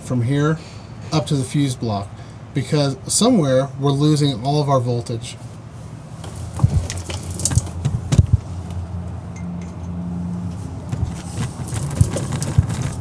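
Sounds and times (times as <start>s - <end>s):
hands handling tools and wiring: 6.2s - 8.5s, 10.5s - 13.0s.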